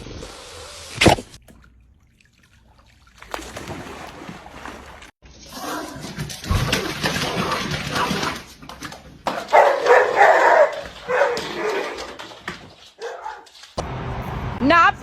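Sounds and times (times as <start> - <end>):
dog barking: 9.3 - 12.0, 13.0 - 13.5.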